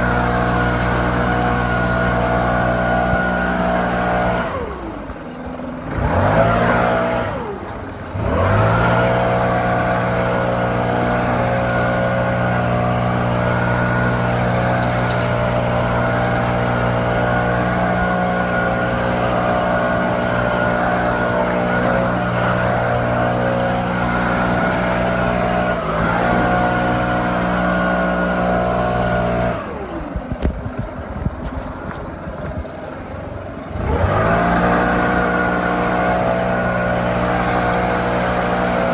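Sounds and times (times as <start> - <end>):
leaf blower engine revving: 0.0 - 32.6, 33.3 - 38.9.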